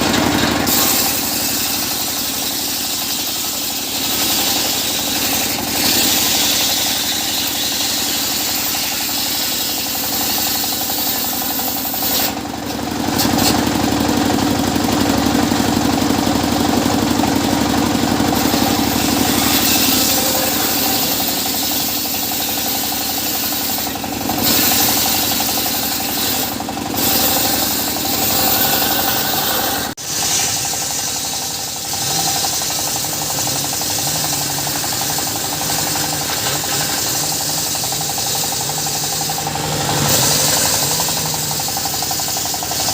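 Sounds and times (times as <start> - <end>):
circular saw running: 0.0 - 42.9.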